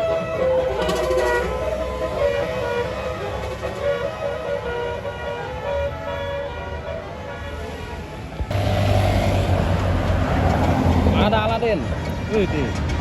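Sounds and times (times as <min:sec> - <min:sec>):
bus engine: 0:00.0 - 0:13.0
road noise: 0:00.0 - 0:13.0
bus horn playing melody: 0:01.1 - 0:10.1.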